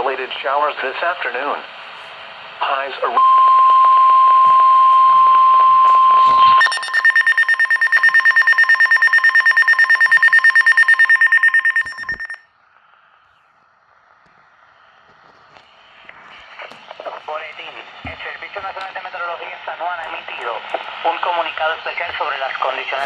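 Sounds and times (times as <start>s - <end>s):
loud alarm tone: 3.2s - 12.4s
rapid pulsing beeps: 6.1s - 12.4s.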